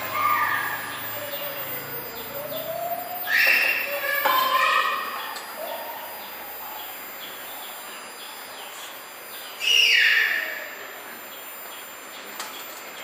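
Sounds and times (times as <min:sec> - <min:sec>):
bird chirping: 0:00.0 - 0:13.0
loud bird call falling in pitch: 0:03.2 - 0:04.9.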